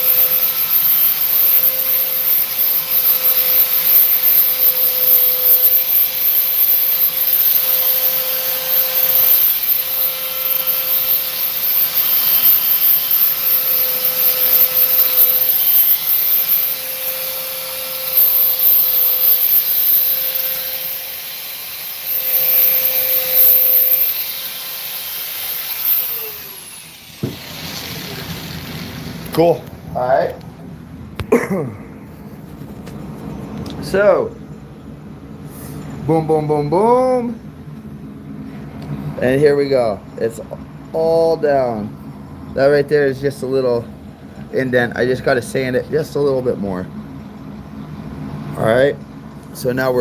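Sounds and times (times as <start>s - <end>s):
power sander rasping: 0.0s - 29.3s
sander spinning down: 0.0s - 29.4s.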